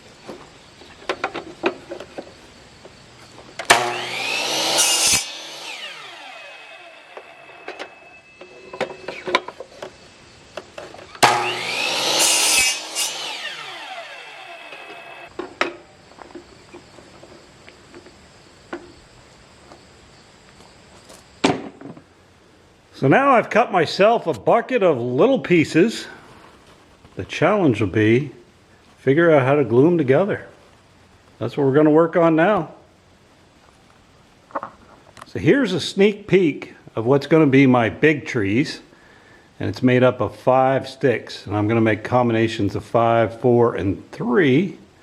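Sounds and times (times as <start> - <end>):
power saw cutting wood: 3.6 - 9.3, 11.1 - 15.3
saw winding down whine: 3.6 - 10.0, 11.2 - 15.3.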